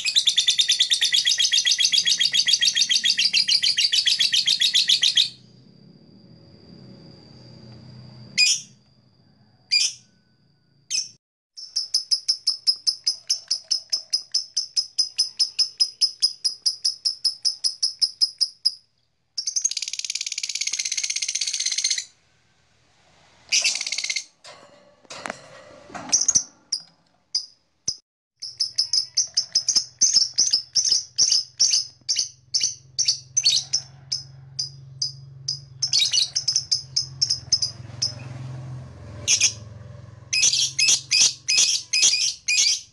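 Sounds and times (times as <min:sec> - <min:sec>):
lovebird chirping: 0:00.0 - 0:05.5, 0:10.9 - 0:22.2, 0:23.5 - 0:24.3, 0:34.6 - 0:38.2, 0:40.3 - 0:42.9.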